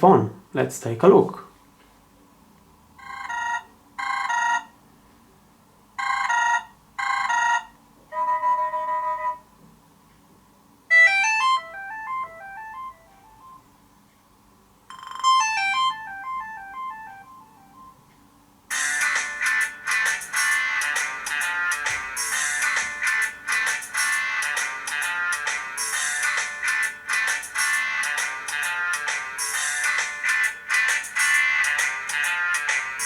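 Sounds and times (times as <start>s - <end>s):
phone ringtones: 3.0s - 4.7s, 6.0s - 9.5s, 10.9s - 13.7s, 14.9s - 18.0s, 18.7s - 33.0s.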